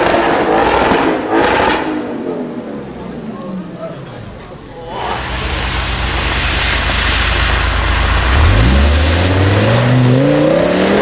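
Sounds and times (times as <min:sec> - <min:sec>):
car engine revving up: 0:04.7 - 0:11.0.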